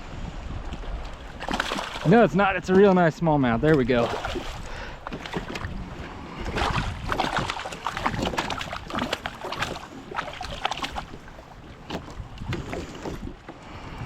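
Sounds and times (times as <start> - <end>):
knocks and rattles in boat: 0.6 - 13.7
small water splashes: 0.7 - 13.5.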